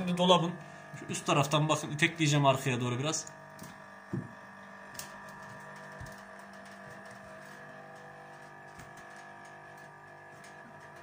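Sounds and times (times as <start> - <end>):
refrigerator buzzing: 0.0 - 11.0
light knocks on cabinet: 4.1 - 4.4.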